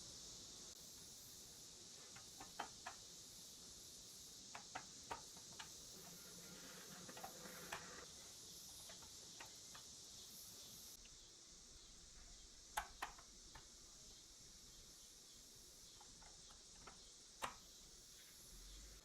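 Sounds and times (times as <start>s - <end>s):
steady hiss: 0.0s - 19.0s
faint clicks and taps: 2.1s - 3.0s, 4.5s - 6.2s, 8.7s - 9.9s, 12.7s - 13.8s, 15.8s - 18.4s.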